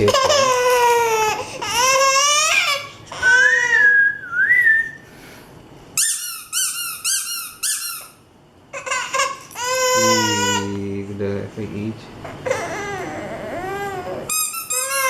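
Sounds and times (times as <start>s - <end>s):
small child crying: 0.0s - 4.0s, 8.8s - 10.8s, 12.2s - 15.0s
high repeated squeaks: 6.0s - 8.2s, 14.3s - 15.0s.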